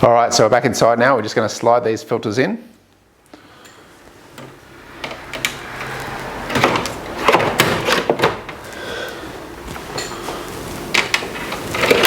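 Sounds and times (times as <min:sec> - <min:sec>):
plastic scraping against plastic: 0:09.6 - 0:12.0.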